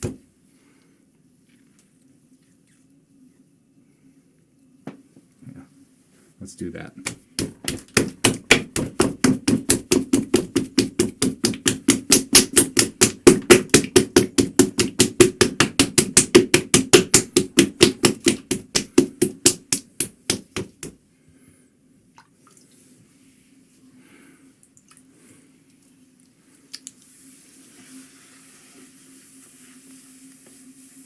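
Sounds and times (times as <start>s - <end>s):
faint steady hum: 0.0s - 31.0s
rapid knocking: 7.1s - 21.0s.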